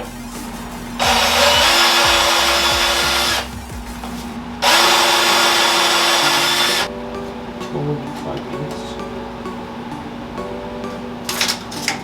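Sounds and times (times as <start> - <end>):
power drill motor whine: 1.0 - 3.5, 4.6 - 6.9.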